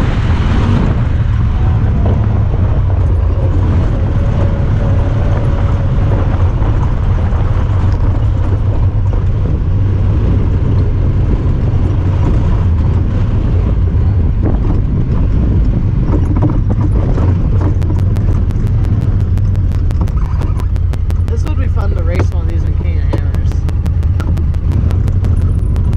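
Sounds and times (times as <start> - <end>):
vehicle engine running: 0.0 - 25.9
rattling over rough ground: 1.2 - 25.9
rapid even ticking: 16.1 - 25.9.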